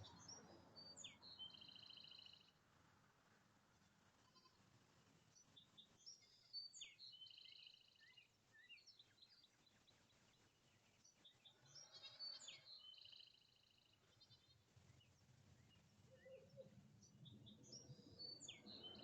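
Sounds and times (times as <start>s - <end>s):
songbird whistling and trilling: 0.0s - 2.4s, 6.0s - 7.8s.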